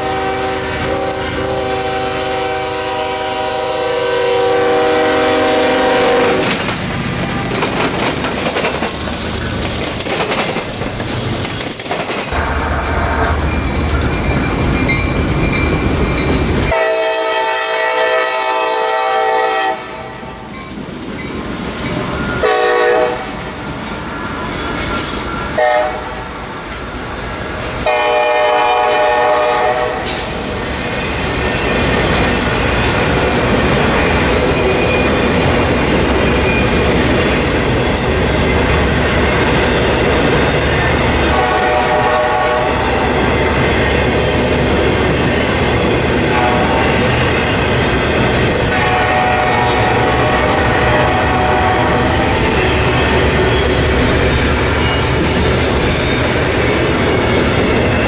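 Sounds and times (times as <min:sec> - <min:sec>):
locomotive horn blasts: 0:00.0 - 0:06.5, 0:12.4 - 0:14.2, 0:16.7 - 0:20.3, 0:22.3 - 0:23.4, 0:25.5 - 0:26.3, 0:27.8 - 0:30.2, 0:41.1 - 0:44.0, 0:46.1 - 0:54.0
train rumble: 0:00.0 - 0:58.0
wheels clattering on rails: 0:06.4 - 0:16.8, 0:19.8 - 0:28.0, 0:30.0 - 0:58.0.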